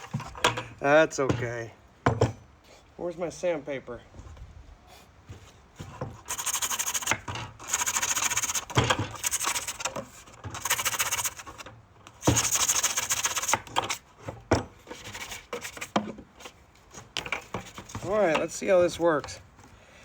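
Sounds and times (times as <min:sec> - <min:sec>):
sandpaper rubbing on plastic: 0:06.2 - 0:14.0, 0:14.9 - 0:16.0.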